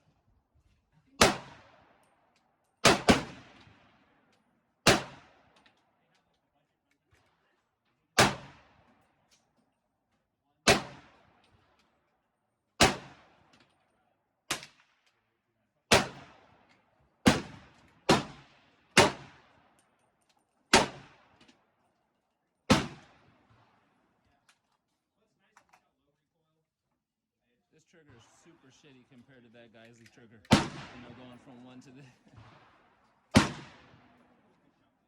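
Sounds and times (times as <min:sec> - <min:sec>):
pistol shots with echo: 0:01.2 - 0:04.1, 0:04.8 - 0:05.6, 0:08.2 - 0:08.9, 0:10.6 - 0:11.4, 0:12.8 - 0:13.5, 0:15.9 - 0:19.7, 0:20.7 - 0:21.4, 0:22.7 - 0:23.8, 0:30.5 - 0:34.6.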